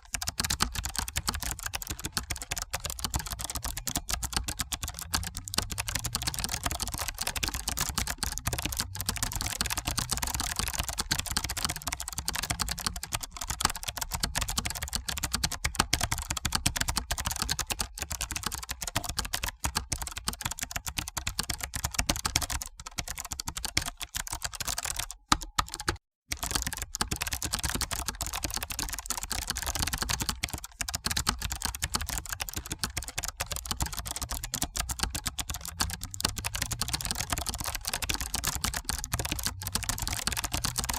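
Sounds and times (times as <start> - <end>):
fast typing on keyboard: 0.0 - 40.9.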